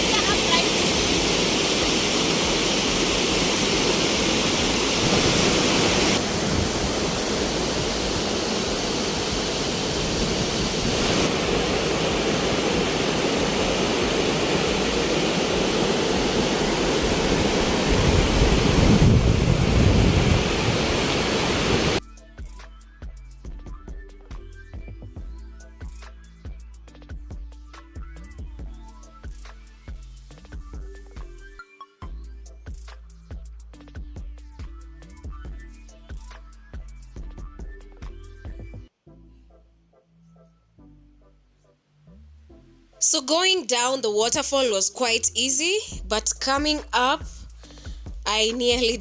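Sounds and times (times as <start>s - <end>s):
rushing water roar: 0.0s - 22.0s
quiet background music: 22.0s - 49.0s.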